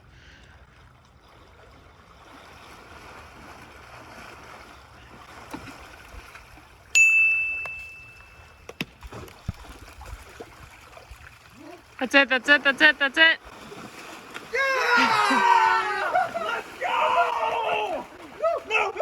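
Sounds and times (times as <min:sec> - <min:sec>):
creek water running: 0:00.0 - 0:19.0
loud ringing ding: 0:07.0 - 0:08.7.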